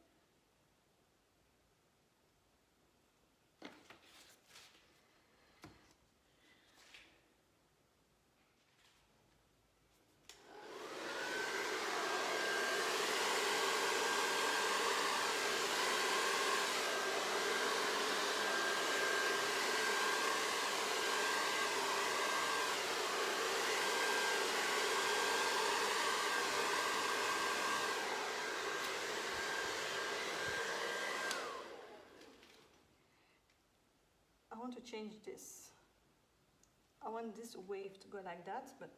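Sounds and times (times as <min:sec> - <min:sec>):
hair dryer whining: 0:10.3 - 0:32.7
hair dryer switch click: 0:30.4 - 0:31.7.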